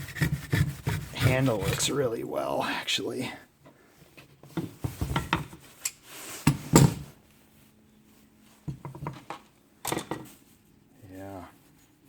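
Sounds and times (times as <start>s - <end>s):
saw scraping: 0.0s - 2.1s.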